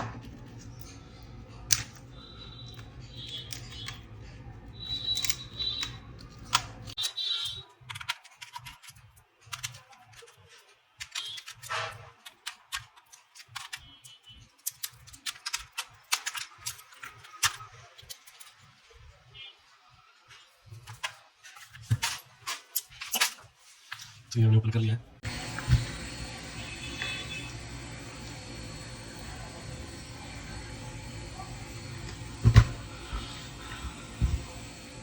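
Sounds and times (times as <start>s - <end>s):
steady low hum: 25.2s - 35.0s.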